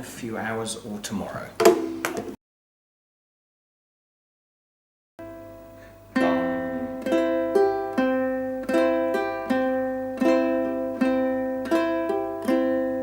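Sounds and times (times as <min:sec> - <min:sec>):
ukulele strumming and plucking: 0:01.6 - 0:02.4, 0:05.2 - 0:13.0.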